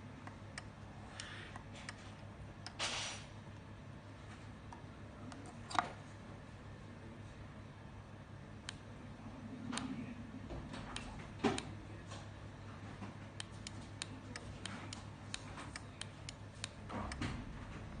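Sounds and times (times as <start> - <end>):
steady low hum: 0.0 - 18.0
remote control buttons clicking: 13.3 - 17.3.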